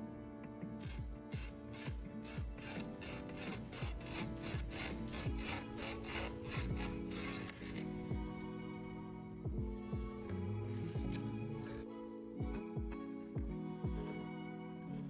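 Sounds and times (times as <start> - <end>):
soft background music: 0.0 - 15.0
rasping strokes: 0.7 - 8.6, 10.2 - 14.2.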